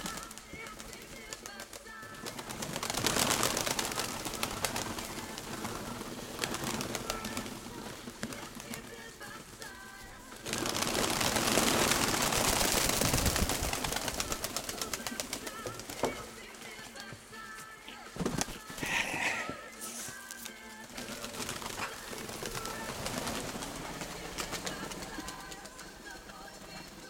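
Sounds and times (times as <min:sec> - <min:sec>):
pigeons cooing: 0:00.0 - 0:27.0.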